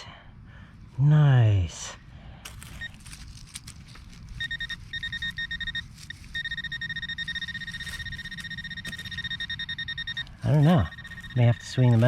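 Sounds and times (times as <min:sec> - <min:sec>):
low rumble of wind or handling: 0:00.0 - 0:12.0
metal detector beeping: 0:04.3 - 0:12.0.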